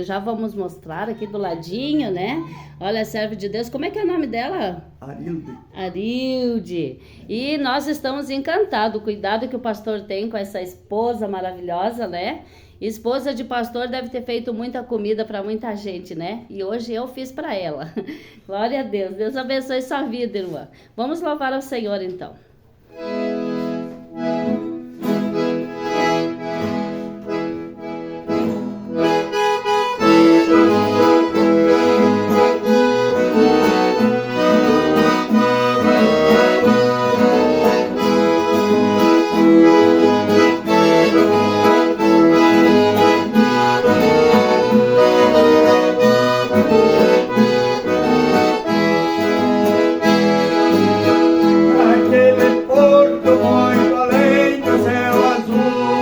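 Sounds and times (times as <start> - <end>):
accordion playing a hymn: 0.0 - 4.4, 22.9 - 56.0.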